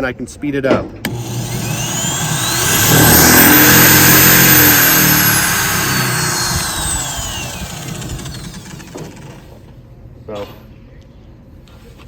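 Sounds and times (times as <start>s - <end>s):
electric drill whining: 1.1s - 9.7s.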